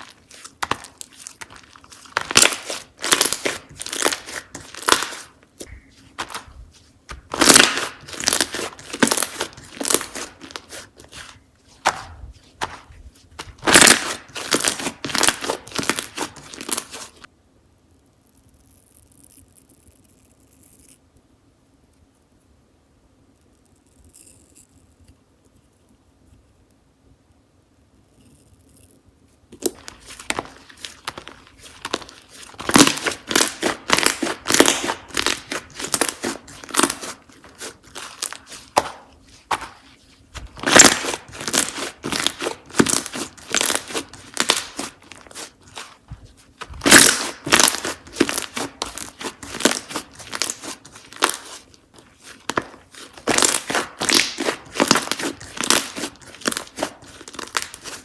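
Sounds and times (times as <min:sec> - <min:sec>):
slime squished by hand: 0:00.0 - 0:17.3, 0:29.6 - 0:58.0.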